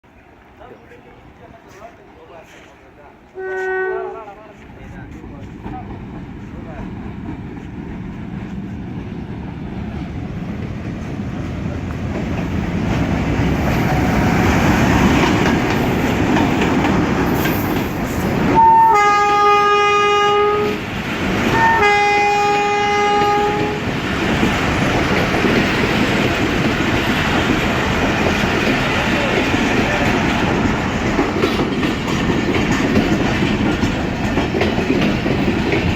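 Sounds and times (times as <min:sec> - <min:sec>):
diesel locomotive rumbling: 0:00.0 - 0:35.9
train clatter on rails: 0:00.6 - 0:35.9
train horn blasts: 0:03.4 - 0:04.3, 0:18.5 - 0:20.8, 0:21.5 - 0:23.9.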